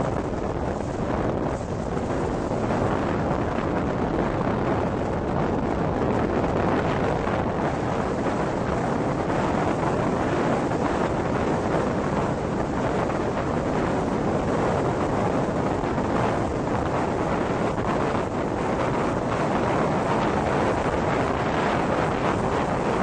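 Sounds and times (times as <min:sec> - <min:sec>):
rainstorm rushing: 0:00.0 - 0:23.0
wind on microphone: 0:00.0 - 0:23.0.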